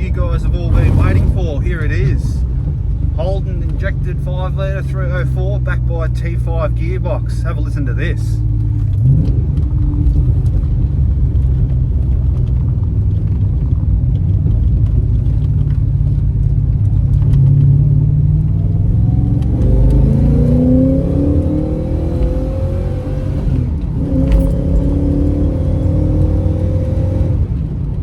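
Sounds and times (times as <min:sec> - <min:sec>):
car engine rumbling and revving: 0:00.0 - 0:28.0.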